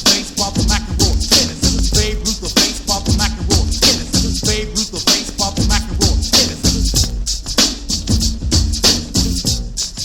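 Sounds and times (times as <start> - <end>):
hip hop dance music: 0.0 - 10.0.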